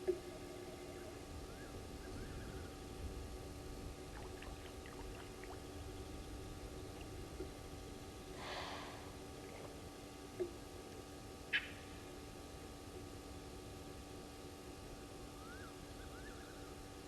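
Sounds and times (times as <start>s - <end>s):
animal breathy noise burst: 8.4s - 9.1s.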